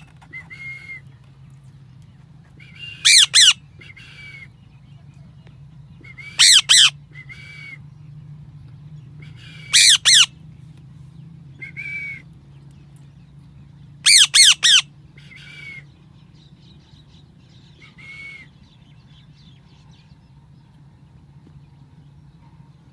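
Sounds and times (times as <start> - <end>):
parrot squawking: 2.7 - 4.5, 6.3 - 7.7, 9.3 - 10.4, 14.0 - 15.8.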